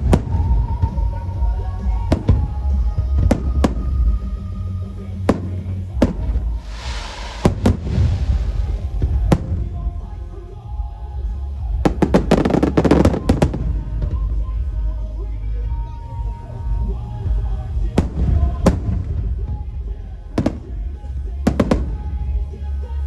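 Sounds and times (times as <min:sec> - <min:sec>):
rapid firework cracks: 0:00.0 - 0:01.0, 0:02.1 - 0:04.4, 0:05.2 - 0:10.3, 0:11.9 - 0:14.2, 0:18.0 - 0:19.6, 0:20.4 - 0:22.5
fireworks bangs: 0:00.0 - 0:10.5, 0:11.8 - 0:14.4, 0:17.7 - 0:22.6
low rumble: 0:00.0 - 0:23.0
fireworks hissing crackle: 0:05.2 - 0:10.5, 0:11.9 - 0:14.0.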